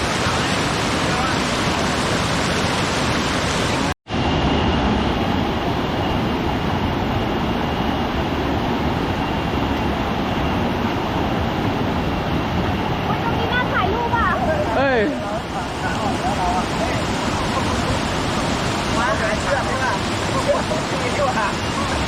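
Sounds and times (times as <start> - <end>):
fast-flowing river water: 0.0 - 4.0, 10.5 - 22.0.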